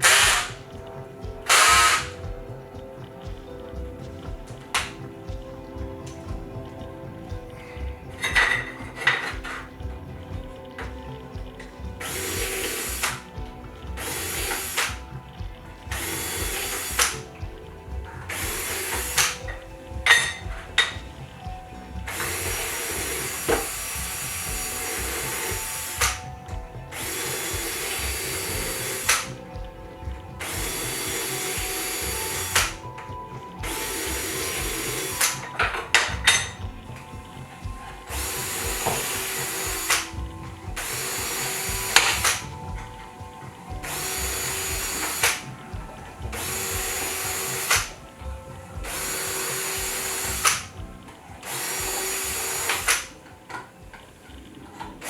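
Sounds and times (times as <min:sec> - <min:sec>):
power drill bursts: 0:46.4 - 0:48.0, 0:51.4 - 0:53.1.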